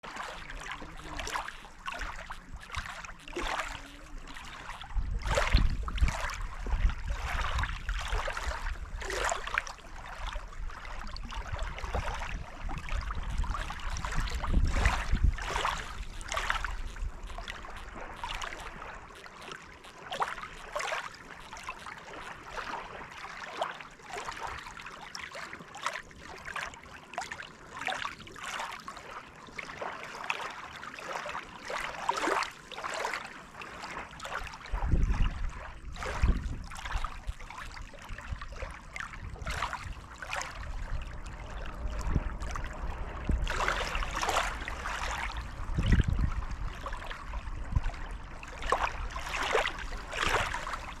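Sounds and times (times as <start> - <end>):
low underwater rumble: 0.0 - 23.0, 34.0 - 51.0
lake waves lapping against shore: 0.0 - 51.0.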